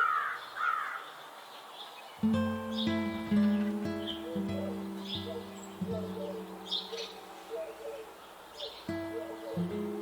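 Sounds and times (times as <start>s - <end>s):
songbirds chirping: 0.0s - 10.0s
plucked acoustic guitar: 2.2s - 7.2s, 8.9s - 10.0s.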